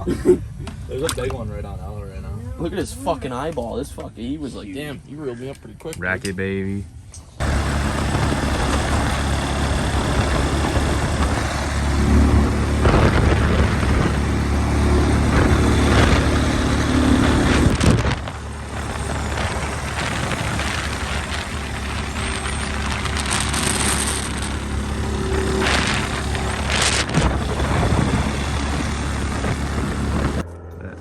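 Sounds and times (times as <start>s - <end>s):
engine humming: 6.8s - 31.0s.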